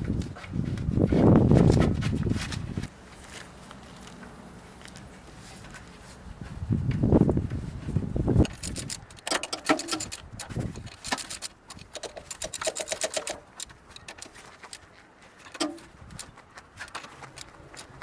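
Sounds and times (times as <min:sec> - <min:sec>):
metal tools clicking on metal: 0:08.4 - 0:14.8, 0:15.5 - 0:18.0.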